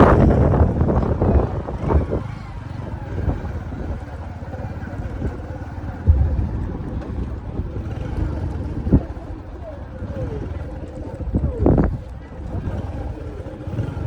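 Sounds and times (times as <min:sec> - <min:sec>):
road traffic rumble: 0:00.0 - 0:14.0
wind on microphone: 0:00.0 - 0:14.0
sharp thump: 0:06.0 - 0:07.7.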